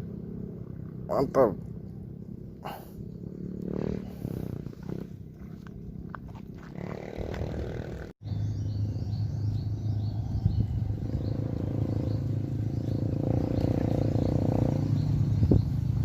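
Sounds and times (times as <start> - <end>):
low motor hum: 0.0 - 16.0
high bird chirps: 7.7 - 15.9.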